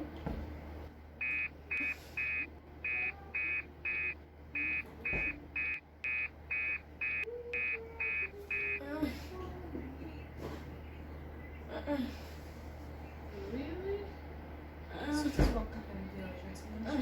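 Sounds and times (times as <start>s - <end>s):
low steady hum: 0.0s - 17.0s
electronic short beeps: 1.2s - 8.8s.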